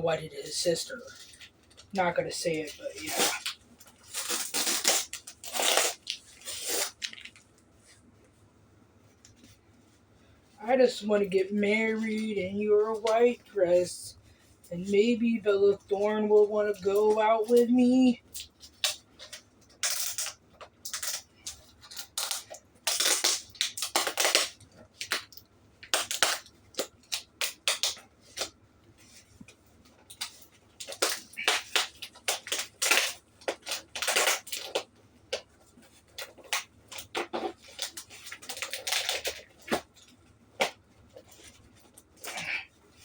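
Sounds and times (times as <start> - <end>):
packaging crinkling and rustling: 1.0 - 8.0, 18.2 - 43.0.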